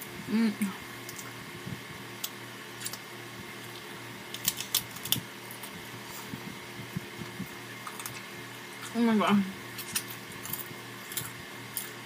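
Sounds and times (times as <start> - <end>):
desk fan humming: 0.0 - 12.0
crunchy chewing: 2.2 - 9.0, 9.7 - 12.0.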